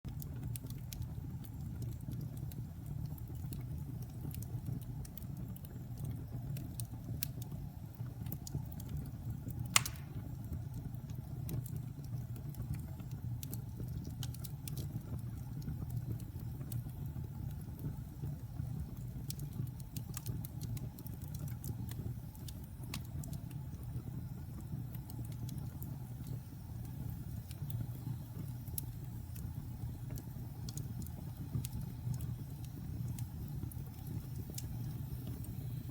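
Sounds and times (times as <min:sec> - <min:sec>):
wood fire crackling: 0:00.1 - 0:35.9
loud snap of fire: 0:08.2 - 0:12.8.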